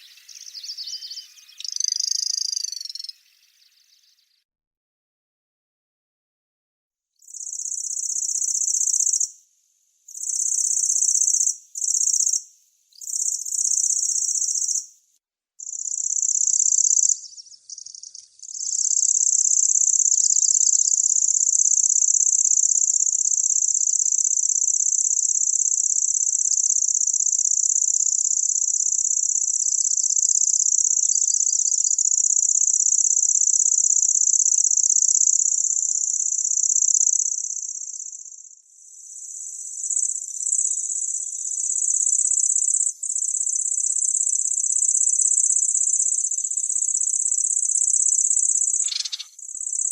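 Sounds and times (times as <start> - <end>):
warbler reeling trill: 0.0 - 4.2, 39.7 - 49.9.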